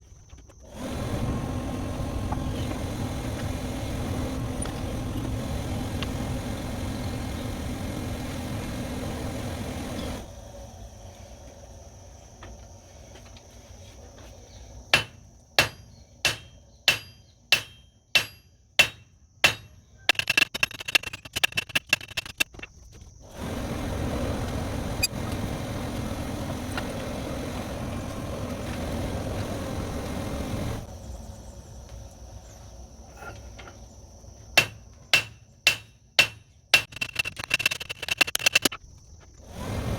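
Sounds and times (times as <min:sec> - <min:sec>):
machine hum: 0:00.6 - 0:13.0, 0:15.6 - 0:39.9
hammer striking metal: 0:15.0 - 0:20.2, 0:34.6 - 0:37.0.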